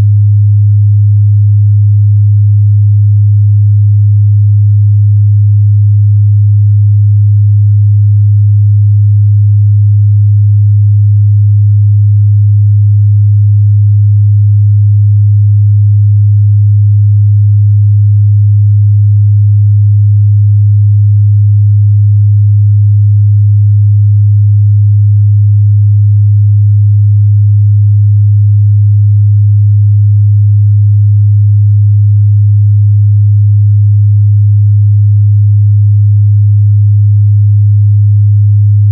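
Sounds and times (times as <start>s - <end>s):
low sine-wave test tone: 0.0s - 38.9s.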